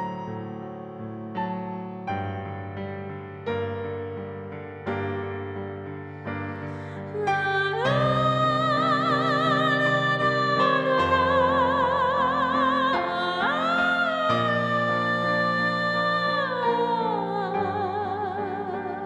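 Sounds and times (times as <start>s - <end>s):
piano chords: 0.0s - 19.0s
soprano singing: 6.3s - 19.0s.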